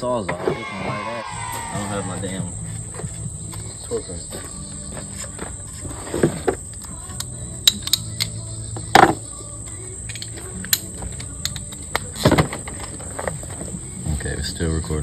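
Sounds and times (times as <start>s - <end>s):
high-pitched insect drone: 0.0s - 15.0s
metal tools clanking: 2.6s - 9.2s, 10.0s - 13.8s.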